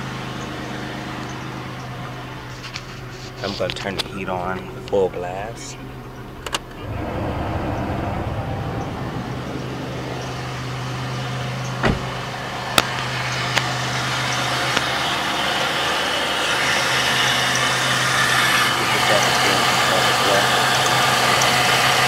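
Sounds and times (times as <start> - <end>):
car engine idling: 0.0 - 22.0
heater blower rushing air: 6.8 - 12.6
thump: 11.8 - 12.2.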